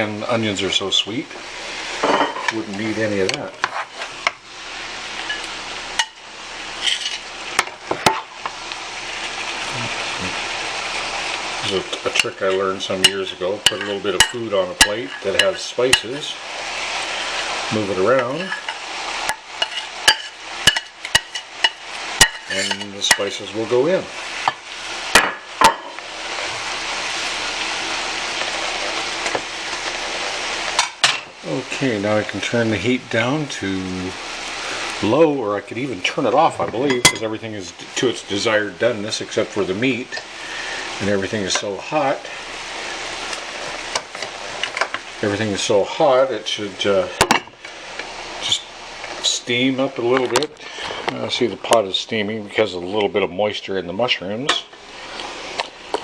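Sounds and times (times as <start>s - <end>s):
food sizzling in a pan: 0.0s - 56.0s
utensil clinking on a pan: 6.8s - 8.2s, 12.0s - 16.1s, 18.2s - 23.4s, 36.8s - 37.3s.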